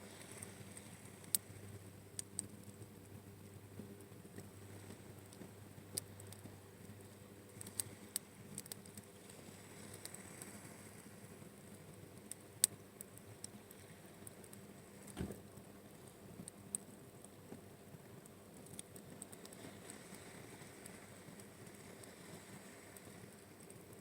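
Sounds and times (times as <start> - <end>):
campfire crackling: 0.1 - 24.0
dull thump: 15.2 - 15.4.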